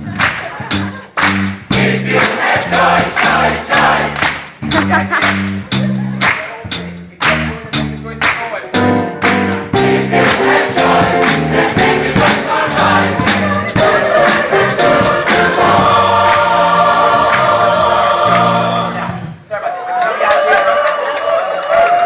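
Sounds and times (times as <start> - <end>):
live band with drums and bass: 0.0 - 18.8
gospel choir singing: 1.7 - 4.4, 9.6 - 19.5.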